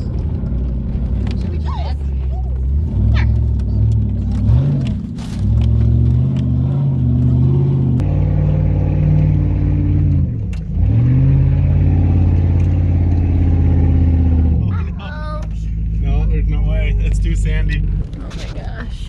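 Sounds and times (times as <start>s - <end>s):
engine revving hard in sand: 2.8s - 14.7s.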